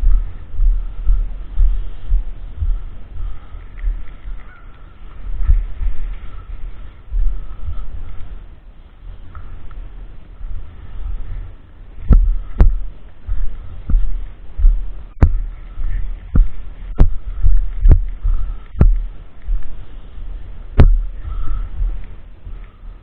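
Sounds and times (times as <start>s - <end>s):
steady low rumble: 0.0s - 23.0s
sharp knocks with low thump: 12.0s - 19.1s, 20.8s - 21.1s.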